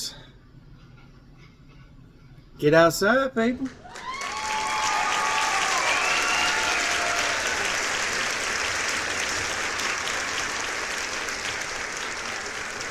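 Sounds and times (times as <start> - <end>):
crowd applauding: 3.7 - 12.9
voices cheering: 3.8 - 12.9.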